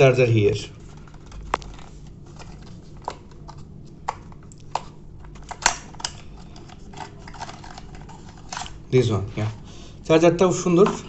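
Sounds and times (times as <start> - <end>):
packaging handling clicks and taps: 0.9 - 8.8.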